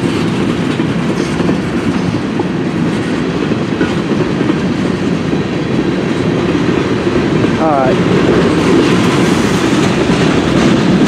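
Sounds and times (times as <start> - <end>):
freight train cars rolling past: 0.0 - 11.0.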